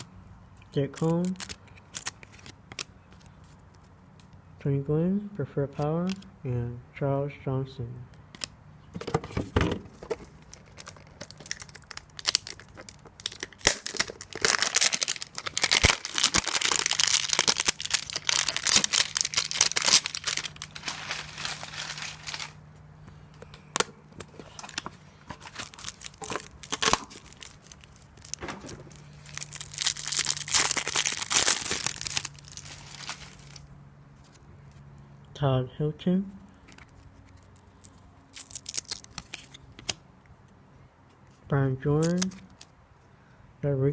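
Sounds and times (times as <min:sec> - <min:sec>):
wrapper crinkling and tearing: 0:01.0 - 0:02.9, 0:10.0 - 0:22.6, 0:24.2 - 0:33.7, 0:36.8 - 0:40.0.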